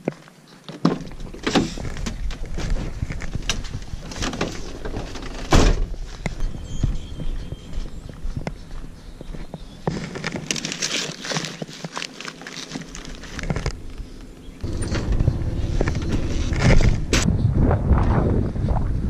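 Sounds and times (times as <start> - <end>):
wind on microphone: 1.1 - 10.0, 13.4 - 19.0
handling clicks and rustling: 9.3 - 17.3
low vehicle rumble: 13.0 - 19.0.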